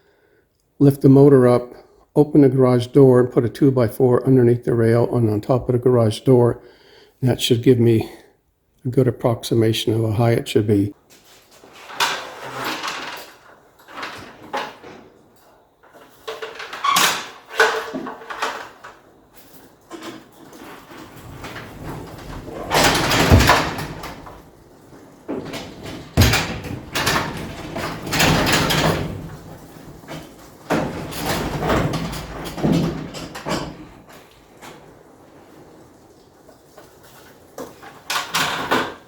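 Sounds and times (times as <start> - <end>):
garage door rolling and rattling: 11.2 - 39.0.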